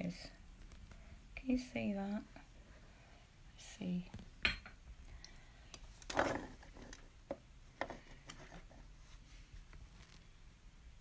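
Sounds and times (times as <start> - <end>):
small objects clicking and knocking: 5.7 - 8.4.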